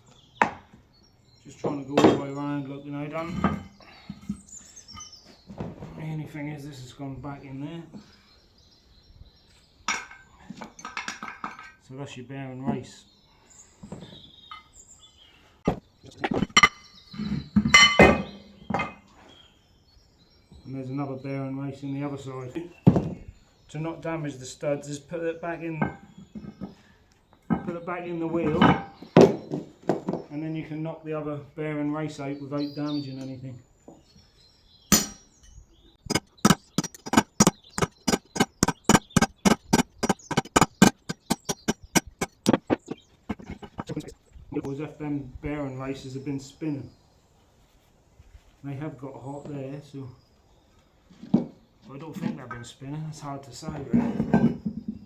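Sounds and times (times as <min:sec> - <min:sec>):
steel striking steel: 0:35.0 - 0:35.2, 0:36.1 - 0:44.1.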